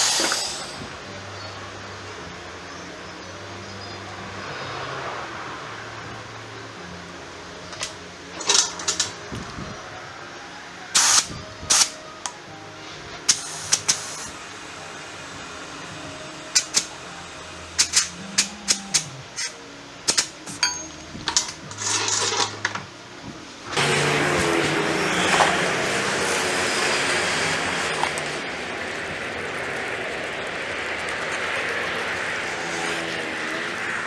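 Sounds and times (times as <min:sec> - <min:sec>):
metal tools clinking and knocking: 0:00.0 - 0:00.8, 0:07.7 - 0:09.2, 0:20.1 - 0:22.9.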